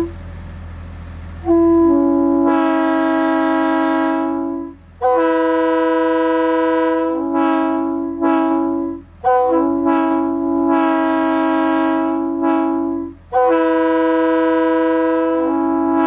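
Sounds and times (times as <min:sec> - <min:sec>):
train air horn chord: 0:00.0 - 0:00.2, 0:01.4 - 0:16.0.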